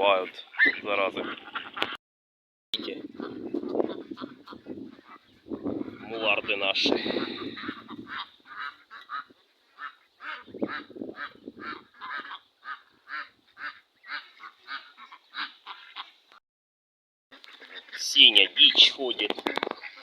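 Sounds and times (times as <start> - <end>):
ducks quacking: 0.1 - 2.0, 2.8 - 16.2, 17.3 - 20.0.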